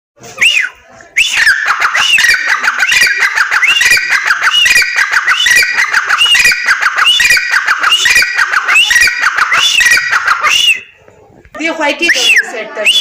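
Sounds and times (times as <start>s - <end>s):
francolin calling: 1.3s - 10.9s.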